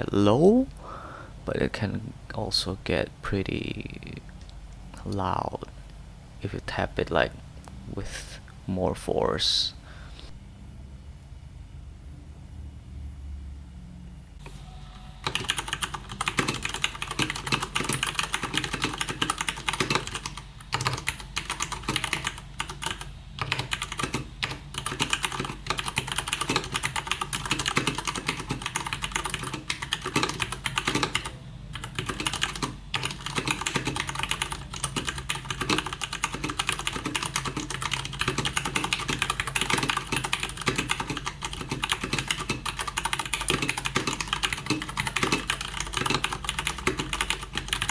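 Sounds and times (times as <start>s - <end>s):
mechanical keyboard typing: 15.2s - 47.9s.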